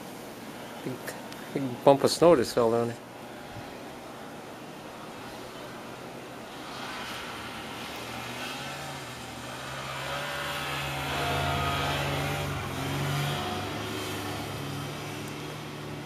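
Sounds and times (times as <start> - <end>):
vehicle engine humming: 5.0 - 16.0.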